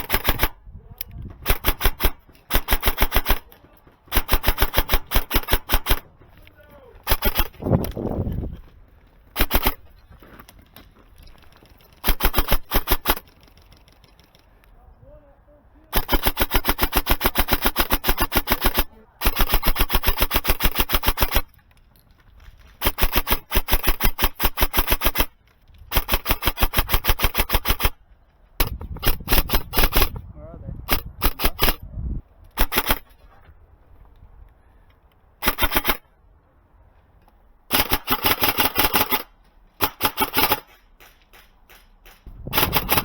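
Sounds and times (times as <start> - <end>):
airsoft gun shots: 1.4 - 3.5, 37.7 - 43.0.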